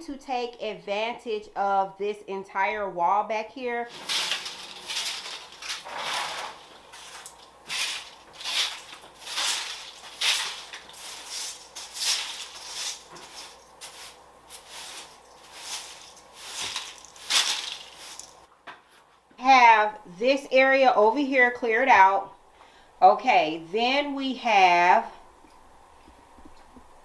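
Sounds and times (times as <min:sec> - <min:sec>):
plant pots scraping and rustling: 0:03.9 - 0:18.5.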